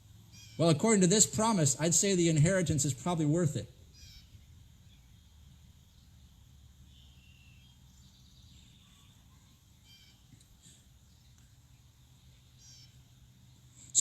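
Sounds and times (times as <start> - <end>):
low background hum: 0.0 - 14.0
faint bird chirps: 0.3 - 0.7, 3.8 - 14.0.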